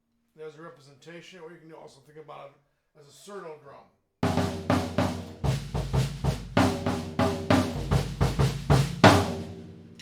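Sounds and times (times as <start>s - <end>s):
drum kit latin groove: 4.2s - 10.0s.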